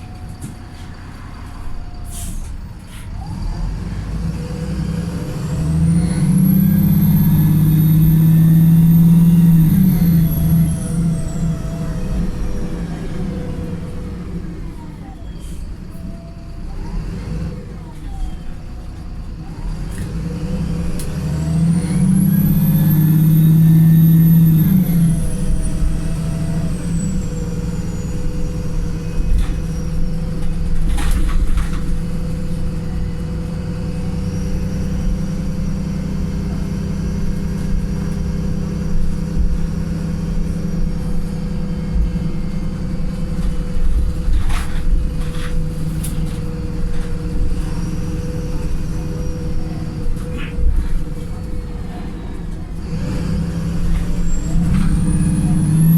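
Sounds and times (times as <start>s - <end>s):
bus diesel engine running: 0.0s - 55.9s
high engine whine: 19.4s - 55.9s.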